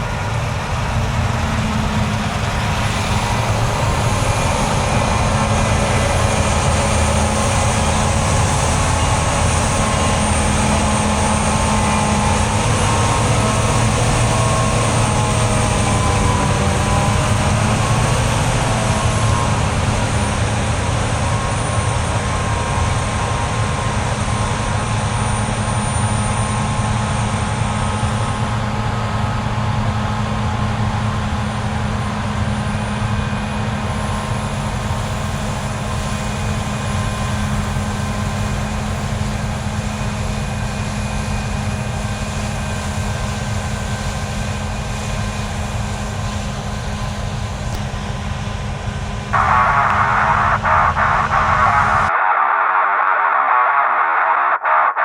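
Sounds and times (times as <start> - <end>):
diesel machinery engine hum: 0.0 - 44.0, 45.0 - 52.2
faint high whine: 49.4 - 55.0.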